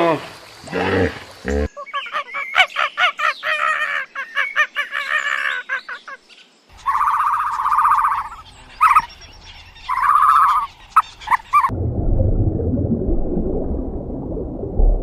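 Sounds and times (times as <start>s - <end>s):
fowl-like bird calls: 1.8s - 11.7s.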